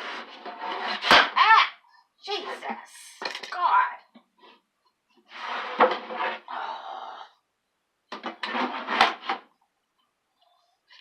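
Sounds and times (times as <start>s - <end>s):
wooden furniture parts scraping: 5.2s - 6.5s, 8.2s - 9.4s.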